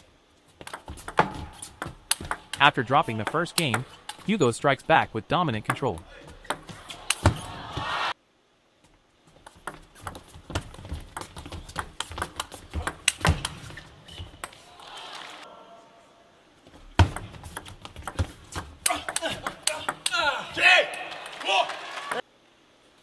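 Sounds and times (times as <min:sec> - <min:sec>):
table tennis ball clicking: 0:00.6 - 0:04.3
voices: 0:02.6 - 0:08.2.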